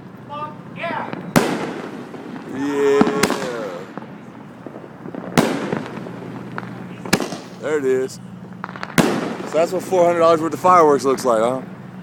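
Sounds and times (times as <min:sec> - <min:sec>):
fireworks bangs: 0:00.0 - 0:12.0
fireworks crackle: 0:00.0 - 0:12.0
man cheering: 0:02.5 - 0:04.0.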